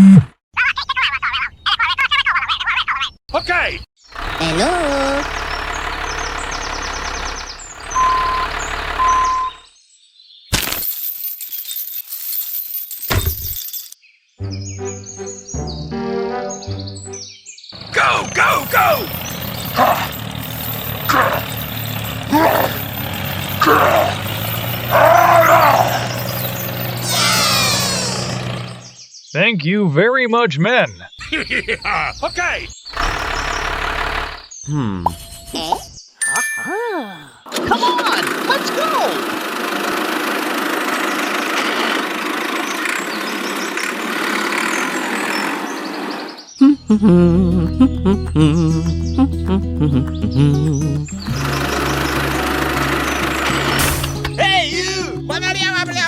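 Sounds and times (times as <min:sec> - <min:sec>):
rattling tractor engine: 0:04.1 - 0:09.6, 0:17.8 - 0:29.0, 0:32.9 - 0:34.5, 0:37.5 - 0:46.1, 0:50.3 - 0:56.0
small motor droning: 0:04.1 - 0:09.6, 0:17.8 - 0:29.0, 0:32.9 - 0:34.6, 0:37.6 - 0:46.5, 0:51.0 - 0:54.3
music: 0:14.4 - 0:17.4, 0:46.8 - 0:56.0
short pitched shouts: 0:17.8 - 0:19.1, 0:24.9 - 0:26.2, 0:27.0 - 0:28.4.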